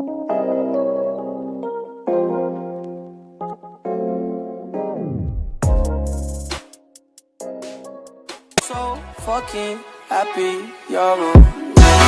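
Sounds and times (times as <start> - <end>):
piano chords: 0.0 - 9.4.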